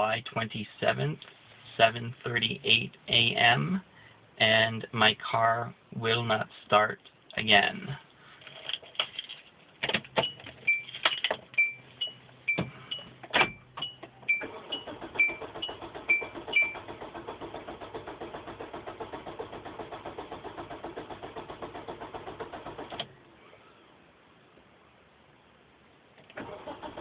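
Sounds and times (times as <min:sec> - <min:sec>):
car keys jangling: 0:08.4 - 0:11.5
starter cranking engine: 0:14.4 - 0:23.1, 0:26.4 - 0:27.0.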